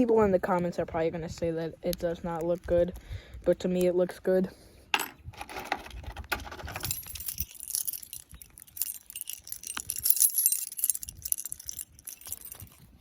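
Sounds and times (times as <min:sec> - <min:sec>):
keys jingling: 0:06.5 - 0:13.0.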